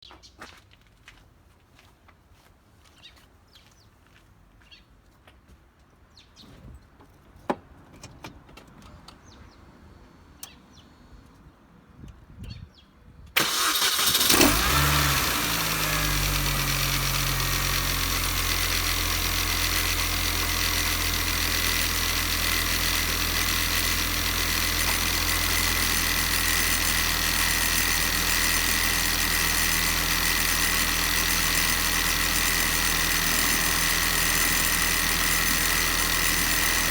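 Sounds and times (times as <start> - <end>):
car engine starting and idling: 13.4 - 36.9
high engine whine: 13.4 - 36.9.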